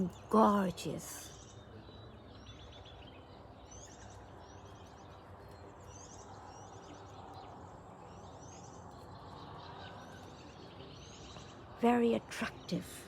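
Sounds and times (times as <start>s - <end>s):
low background noise: 0.0s - 13.0s
small birds chirping: 0.0s - 13.0s.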